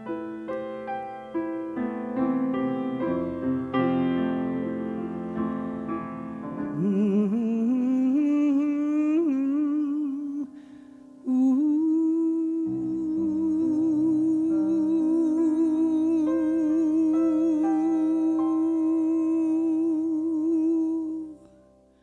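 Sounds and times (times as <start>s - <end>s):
piano chords: 0.0s - 22.0s
person humming with vibrato: 11.3s - 21.5s.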